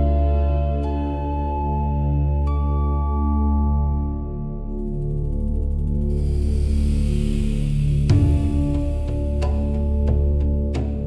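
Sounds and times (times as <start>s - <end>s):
sea wave hiss: 6.2s - 9.8s.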